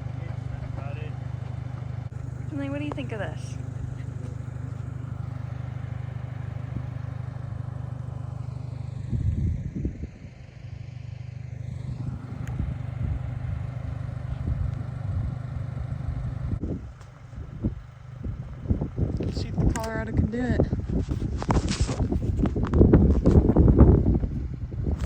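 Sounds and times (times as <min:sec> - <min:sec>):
car engine running at low speed: 0:00.0 - 0:25.0.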